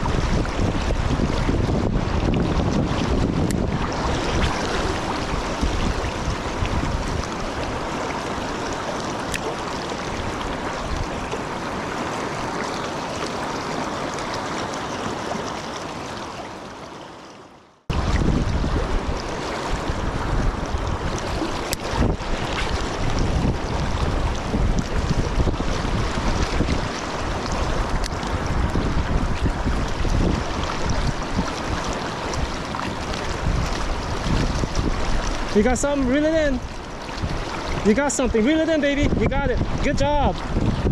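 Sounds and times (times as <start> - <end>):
wind buffeting microphone: 0.0 - 12.6, 17.9 - 40.9
river water rushing: 0.0 - 40.9.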